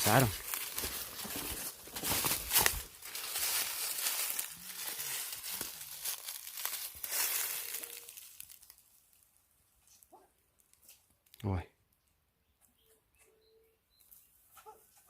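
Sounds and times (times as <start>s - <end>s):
dry leaves crunching underfoot: 0.0s - 9.3s.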